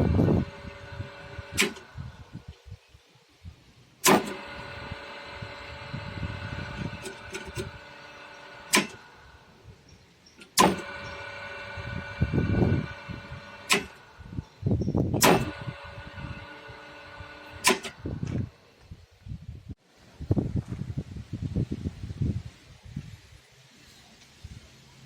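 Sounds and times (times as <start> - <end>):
steady electrical hum: 0.0 - 19.1.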